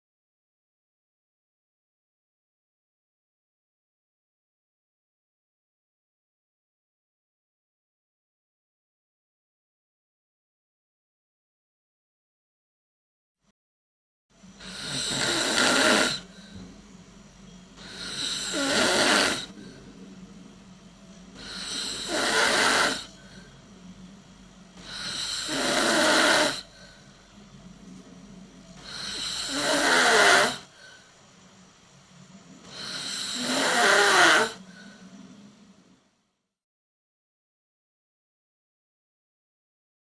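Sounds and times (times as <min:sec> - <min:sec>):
faint steady hum: 0:14.3 - 0:36.6
person snoring: 0:14.6 - 0:16.6, 0:17.8 - 0:20.0, 0:21.4 - 0:23.7, 0:24.8 - 0:27.2, 0:28.8 - 0:31.1, 0:32.6 - 0:35.2.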